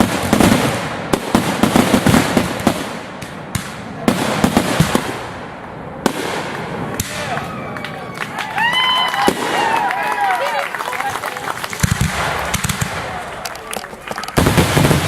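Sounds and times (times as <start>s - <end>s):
fireworks sharp bangs: 0.0s - 7.6s, 9.2s - 9.9s, 11.6s - 15.0s
fireworks crackling: 0.0s - 15.0s.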